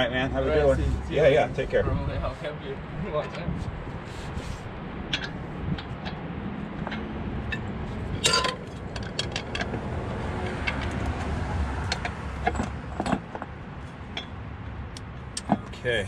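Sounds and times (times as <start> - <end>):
metallic clank: 6.8 - 9.8
metal tools clinking: 6.9 - 9.7.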